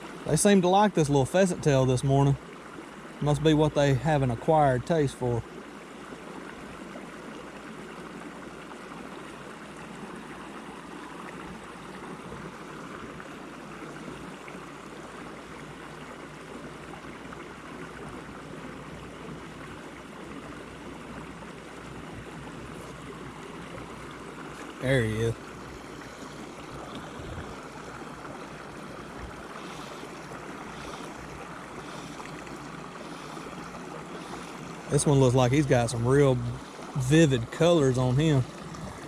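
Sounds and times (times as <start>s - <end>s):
creek water rushing: 0.0s - 39.0s.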